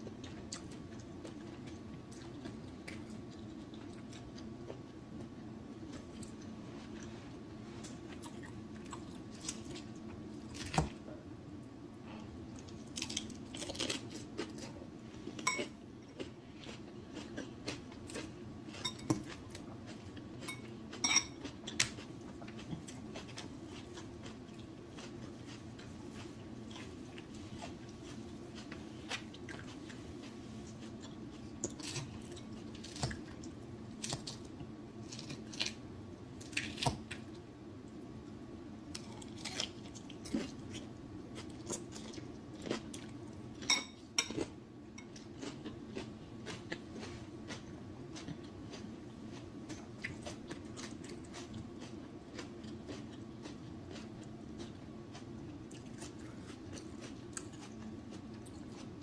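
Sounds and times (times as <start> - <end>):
chewing and mouth sounds: 7.8 - 10.0, 12.2 - 34.4, 38.9 - 59.0
utensils clinking on dishes: 18.8 - 19.3, 20.4 - 21.5, 43.6 - 44.4.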